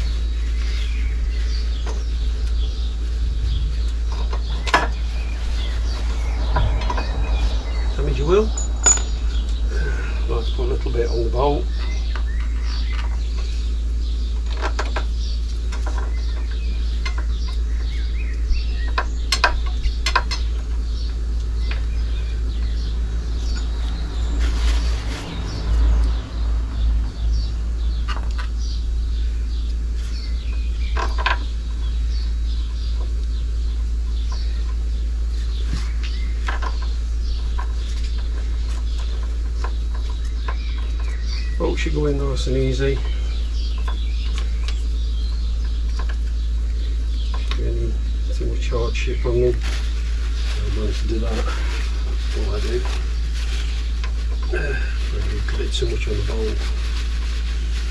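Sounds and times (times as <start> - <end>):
low hum: 0.0 - 57.9
tools and parts clicking: 8.6 - 9.2.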